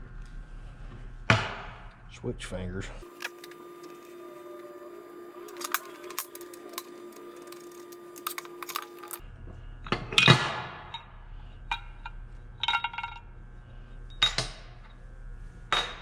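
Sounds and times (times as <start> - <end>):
metal parts clicking: 5.5 - 9.2.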